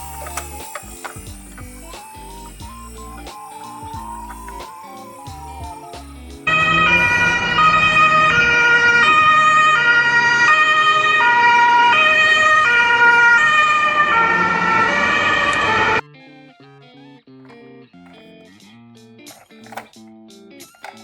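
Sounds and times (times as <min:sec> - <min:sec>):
two-tone ambulance siren: 0:00.0 - 0:16.0.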